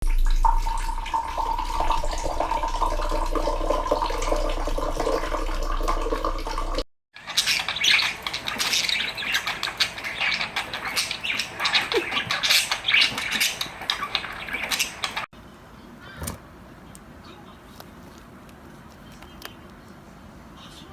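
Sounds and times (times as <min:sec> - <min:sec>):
rapid bird chirps and squawks: 0:07.2 - 0:15.3
birds calling: 0:07.2 - 0:16.4.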